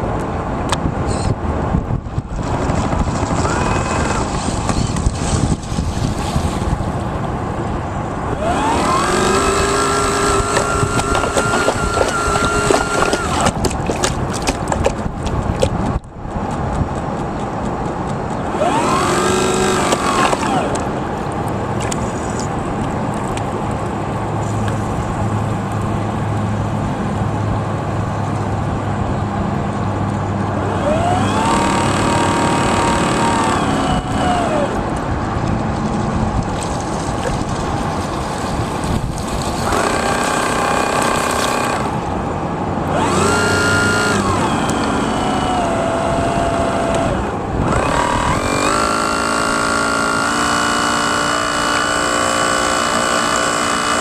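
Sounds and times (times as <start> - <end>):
steady noisy background: 0.0 - 54.0
model boat motors whining: 3.2 - 5.2, 8.3 - 15.7, 18.4 - 21.2, 30.6 - 35.1, 38.7 - 42.2, 42.8 - 54.0.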